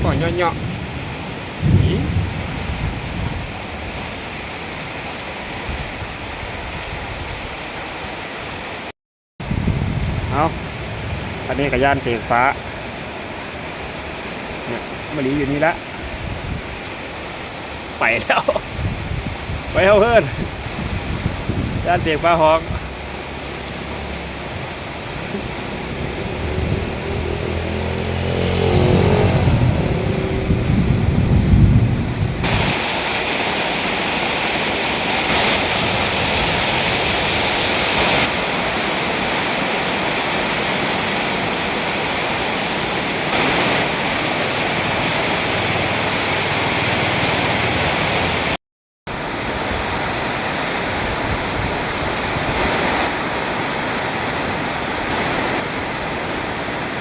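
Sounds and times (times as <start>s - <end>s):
heavy rain falling: 0.0s - 57.0s
loud low rumble: 21.5s - 32.4s.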